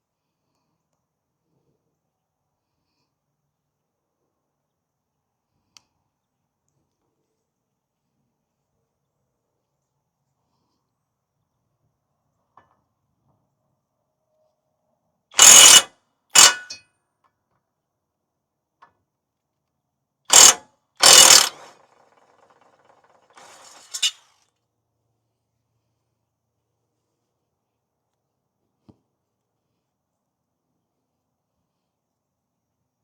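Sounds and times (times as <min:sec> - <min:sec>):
wrench working a bolt: 0:15.4 - 0:16.8, 0:20.3 - 0:21.9, 0:23.3 - 0:24.3
faint metallic rattling: 0:20.3 - 0:24.4.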